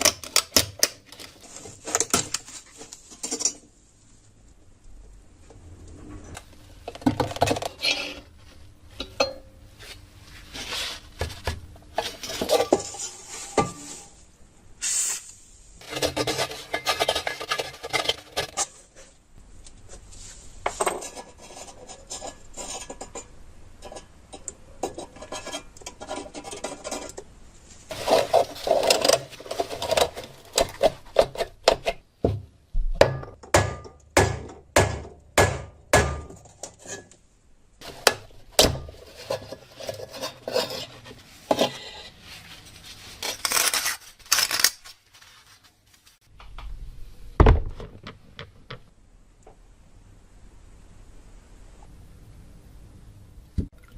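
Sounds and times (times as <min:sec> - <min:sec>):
metal scraping and rubbing: 0:07.4 - 0:08.4, 0:12.0 - 0:15.2, 0:15.8 - 0:19.2, 0:38.8 - 0:46.3
sharp knocks on metal: 0:32.2 - 0:36.4.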